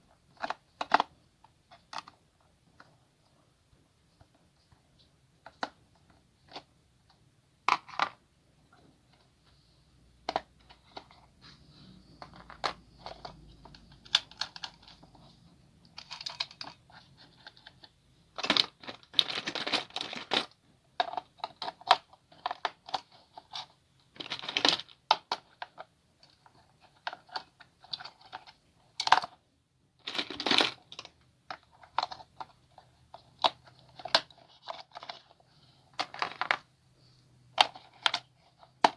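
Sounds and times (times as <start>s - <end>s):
plastic toy parts clicking: 0.4s - 1.1s, 12.2s - 15.1s, 15.8s - 29.4s.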